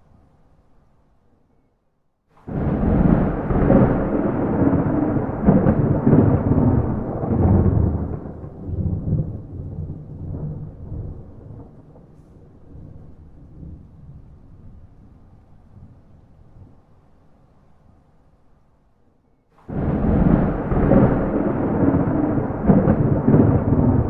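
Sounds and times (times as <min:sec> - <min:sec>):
thunder rolling: 0:02.5 - 0:15.0, 0:19.6 - 0:24.0.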